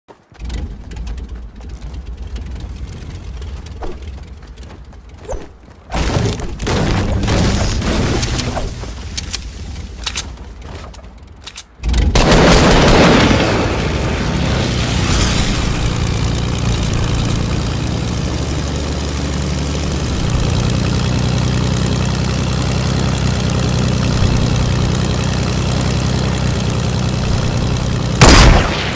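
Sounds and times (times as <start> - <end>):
airplane engine drone: 0.2 - 28.9
clicks: 8.1 - 11.8.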